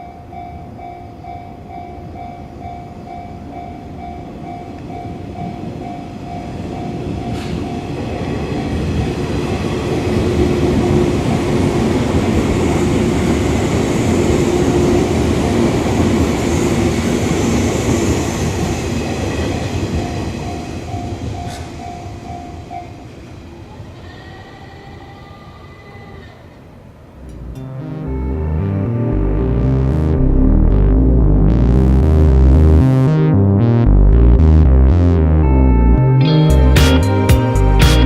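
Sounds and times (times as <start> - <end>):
level crossing warning bell dinging: 0.0 - 8.8, 27.2 - 29.6
electric train rumble and wheel clatter: 1.5 - 25.5.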